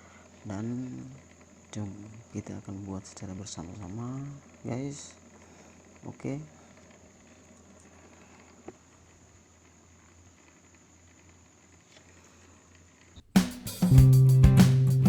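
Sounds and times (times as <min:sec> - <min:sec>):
steady low hum: 0:00.0 - 0:10.0
guitar music: 0:13.4 - 0:15.0.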